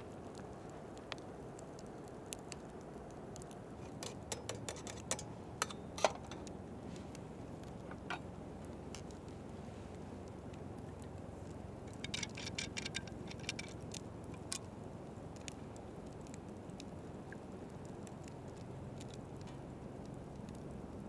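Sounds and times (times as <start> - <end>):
steady low hiss: 0.0 - 21.0
small hard objects clicking: 0.4 - 9.4, 10.3 - 16.9.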